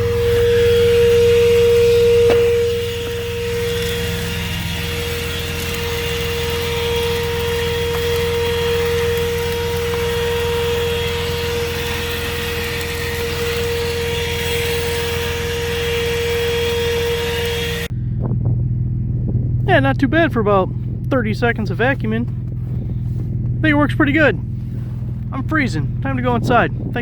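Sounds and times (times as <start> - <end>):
handheld vacuum whining: 0.0 - 17.9.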